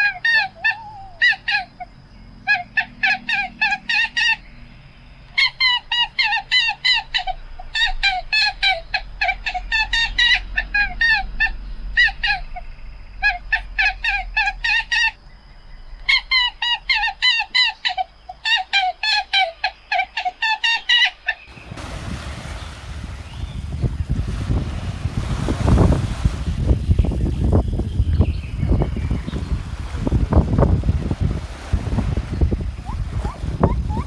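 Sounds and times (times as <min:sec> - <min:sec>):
bird giving fast repeated calls: 0:00.0 - 0:21.7, 0:32.0 - 0:34.0
steady rushing noise: 0:07.4 - 0:17.7, 0:21.5 - 0:34.0.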